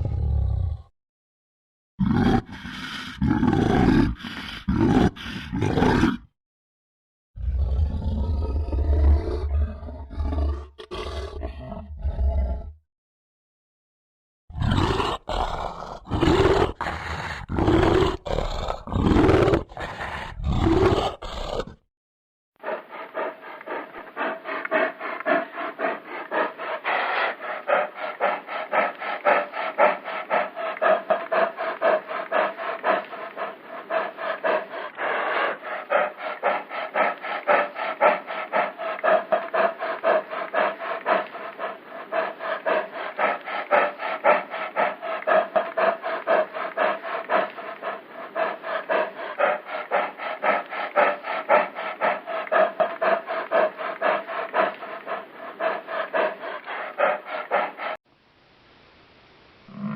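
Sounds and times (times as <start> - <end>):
bear rasping: 2.0 - 6.3, 14.6 - 21.8, 22.6 - 58.0.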